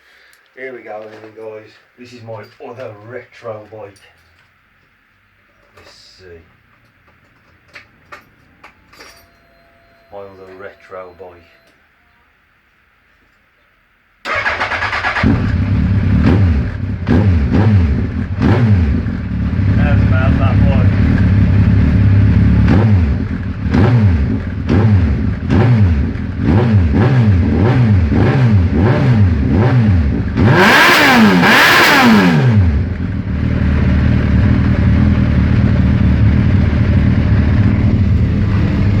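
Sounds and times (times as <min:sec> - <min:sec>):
motorcycle engine idling and revving: 0:14.3 - 0:39.0.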